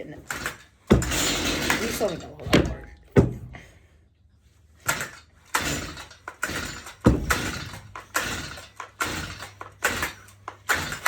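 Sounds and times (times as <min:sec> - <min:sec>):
chainsaw starter cord pulls: 0:00.0 - 0:02.4, 0:04.8 - 0:11.0.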